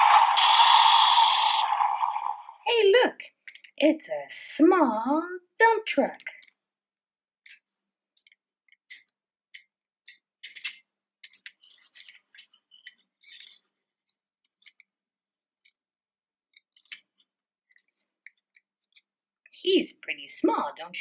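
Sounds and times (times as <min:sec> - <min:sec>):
plastic toy clicking and scraping: 0:03.4 - 0:03.8, 0:05.9 - 0:06.6, 0:07.4 - 0:15.0, 0:16.5 - 0:21.0.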